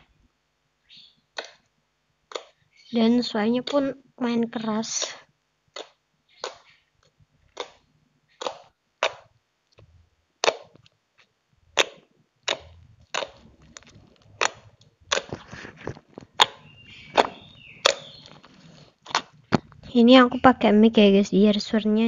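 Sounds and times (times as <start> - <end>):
slime squeezed by hand popping: 8.4 - 9.3, 10.4 - 10.8, 11.8 - 19.9.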